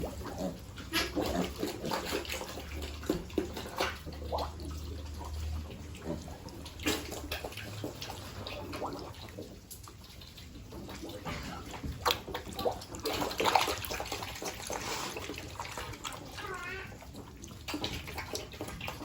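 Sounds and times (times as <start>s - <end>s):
piglets grunting and squealing: 0.0s - 2.7s
water splashing and running: 0.0s - 19.0s.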